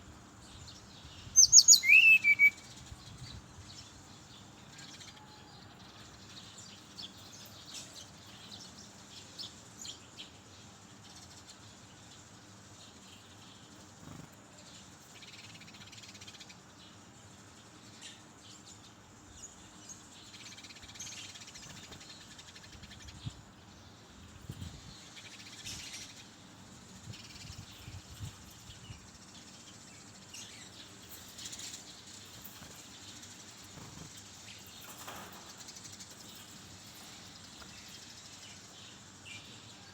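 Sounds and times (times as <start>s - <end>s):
bird chirping and whistling: 1.4s - 2.6s.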